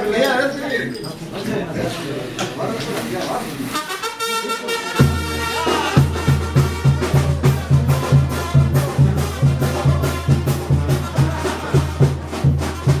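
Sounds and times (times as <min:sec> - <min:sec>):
fast drum beat: 0:05.0 - 0:13.0.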